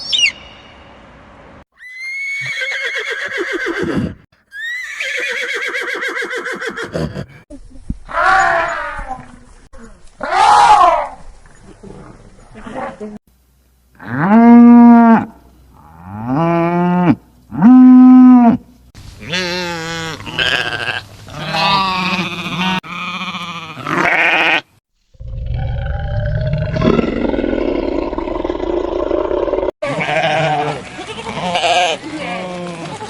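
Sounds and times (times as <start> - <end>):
livestock bleating: 19.2 - 24.7, 29.8 - 32.7.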